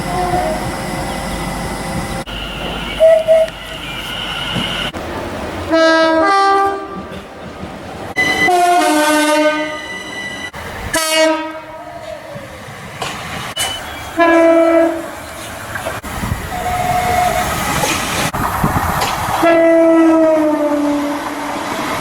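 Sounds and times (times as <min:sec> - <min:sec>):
locomotive air horn blasts: 0:00.0 - 0:05.0, 0:05.7 - 0:07.0, 0:08.2 - 0:10.2, 0:10.9 - 0:11.8, 0:13.6 - 0:15.1, 0:19.4 - 0:21.2.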